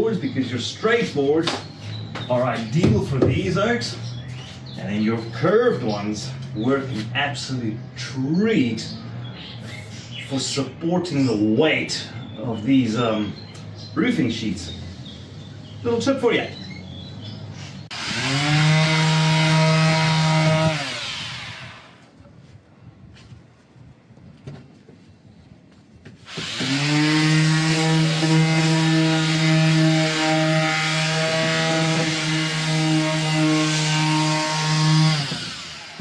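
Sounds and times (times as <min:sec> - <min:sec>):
power tool motor whine: 0:17.9 - 0:22.1, 0:26.2 - 0:36.0.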